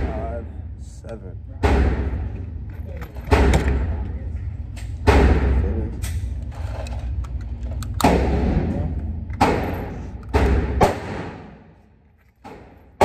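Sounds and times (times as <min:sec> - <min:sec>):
gunshots with echo: 0:01.6 - 0:02.4, 0:05.0 - 0:05.8, 0:08.0 - 0:08.8, 0:09.4 - 0:11.8.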